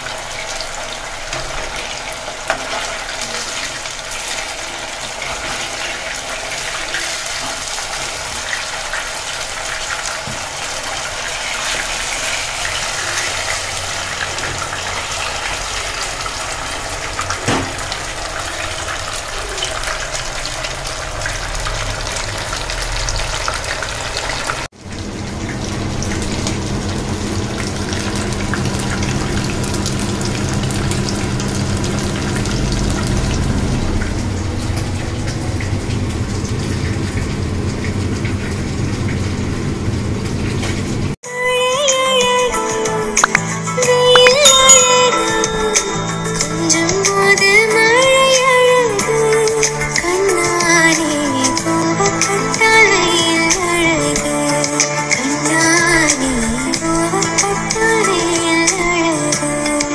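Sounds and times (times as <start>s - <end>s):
fish deep-frying in oil: 0.0s - 41.2s.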